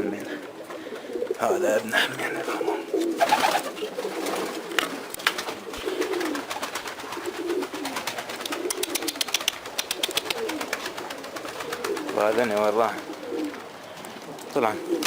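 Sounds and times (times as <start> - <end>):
pigeons cooing: 0.0 - 15.0
sharp clicks: 8.4 - 10.8.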